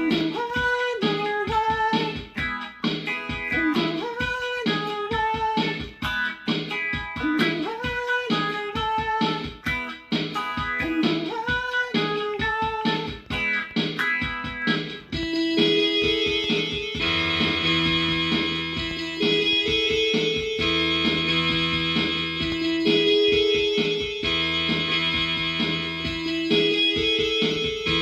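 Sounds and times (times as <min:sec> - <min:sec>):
guitar instrumental: 0:00.0 - 0:28.0.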